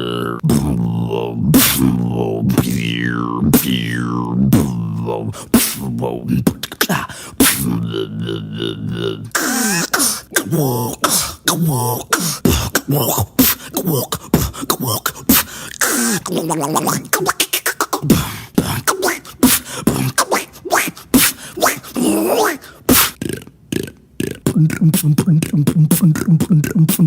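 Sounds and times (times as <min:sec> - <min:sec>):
gliding vocal sounds: 0:00.0 - 0:27.0
beatboxing clicks and pops: 0:01.5 - 0:04.8, 0:06.4 - 0:07.8, 0:12.4 - 0:22.0, 0:22.9 - 0:27.0.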